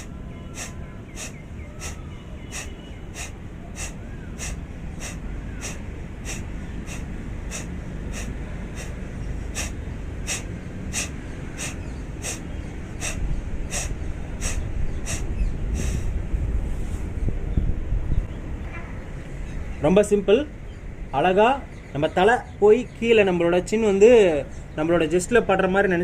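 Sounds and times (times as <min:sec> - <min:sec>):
wind rumbling on microphone: 0:00.0 - 0:19.8
woman exhaling forcefully: 0:00.6 - 0:12.4.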